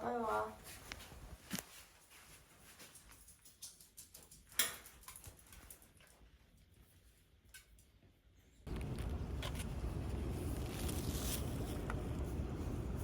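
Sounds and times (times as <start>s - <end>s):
dog claws clicking on hard floor: 2.8s - 6.2s.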